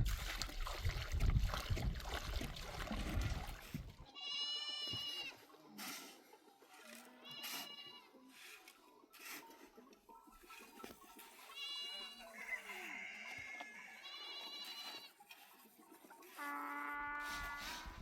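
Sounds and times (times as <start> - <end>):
goat bleating: 4.0 - 5.4, 7.2 - 8.1, 11.5 - 12.2, 14.0 - 15.2.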